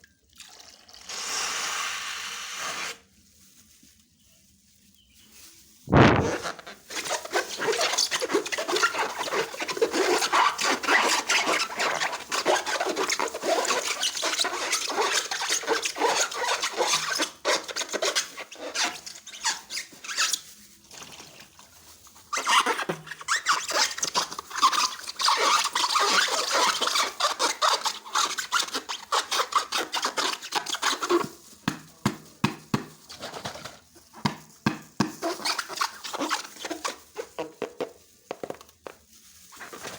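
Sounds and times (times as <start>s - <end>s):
slime crackling and squelching: 5.9s - 20.4s.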